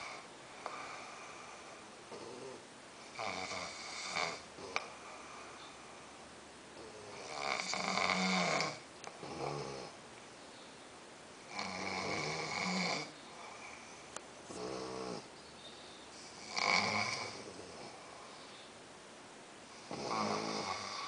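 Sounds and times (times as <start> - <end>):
man snoring: 0.0 - 4.9, 6.8 - 10.0, 11.5 - 13.9, 14.5 - 15.3, 16.4 - 18.2, 19.8 - 21.0
dog snoring: 0.0 - 5.9, 6.8 - 10.0, 11.5 - 15.3, 16.2 - 18.5, 19.7 - 21.0.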